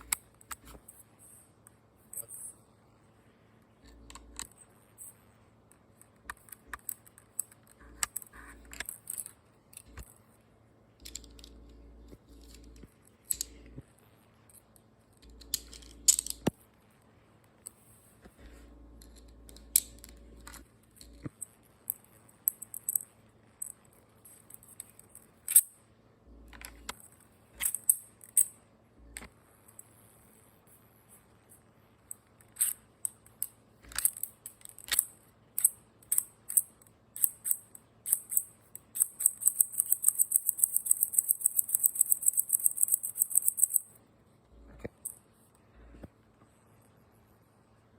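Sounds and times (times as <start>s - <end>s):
plastic parts clicking and rattling: 5.8s - 10.2s, 11.0s - 13.8s, 14.5s - 16.6s, 19.0s - 25.7s, 26.4s - 29.8s, 32.1s - 43.9s.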